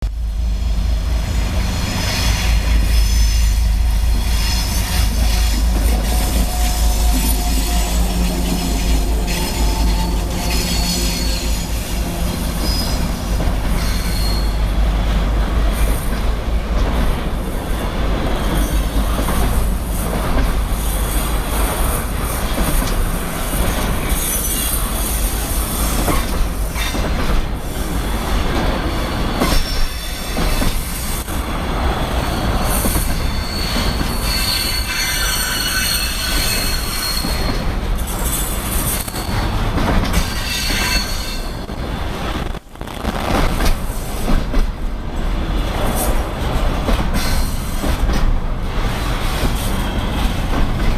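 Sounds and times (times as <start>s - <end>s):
diesel locomotive drone: 0.0s - 50.9s
train wheels clattering over rail joints: 4.1s - 31.5s, 32.5s - 41.8s, 43.2s - 50.9s
high wheel squeal: 4.2s - 14.7s, 31.6s - 39.5s, 40.1s - 42.4s.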